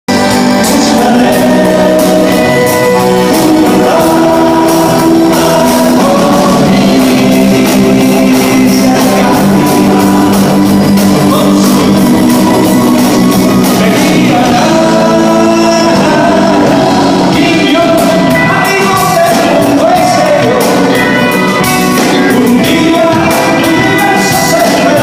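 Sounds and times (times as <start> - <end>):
live rock band playing: 0.1 - 25.0
person singing: 0.1 - 25.0.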